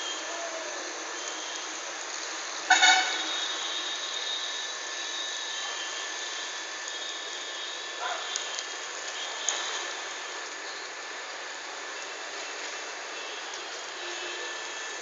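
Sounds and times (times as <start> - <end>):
steady background noise: 0.0 - 15.0
vehicle horn toot: 2.7 - 3.9, 13.2 - 14.8.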